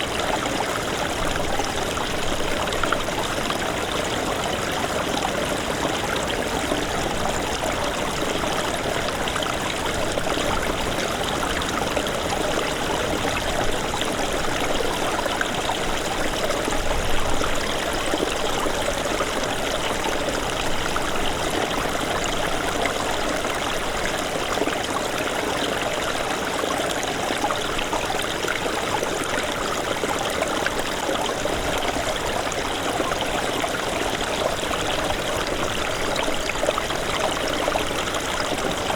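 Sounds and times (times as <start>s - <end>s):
stream water rushing and babbling: 0.0s - 38.9s.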